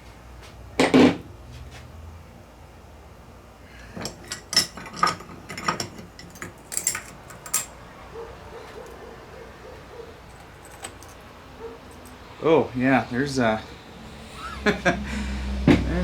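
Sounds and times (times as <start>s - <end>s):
metal parts clinking: 3.9s - 7.8s, 10.2s - 11.3s, 11.9s - 12.2s.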